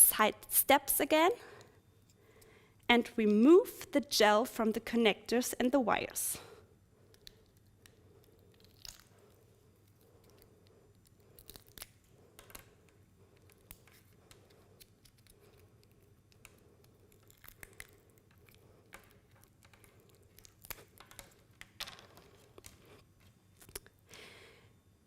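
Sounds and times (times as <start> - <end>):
sticky gel crackling: 13.4 - 21.6.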